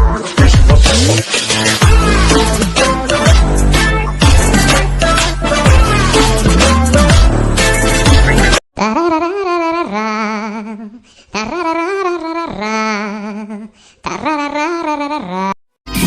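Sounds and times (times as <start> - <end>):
loud electronic music: 0.0 - 8.6
solo voice singing with vibrato: 8.8 - 15.6.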